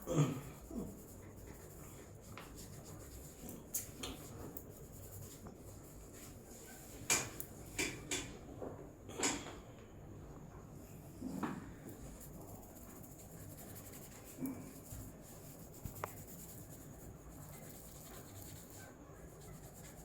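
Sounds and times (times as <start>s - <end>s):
hands rubbing and slapping head: 0.8s - 8.0s, 11.9s - 20.0s.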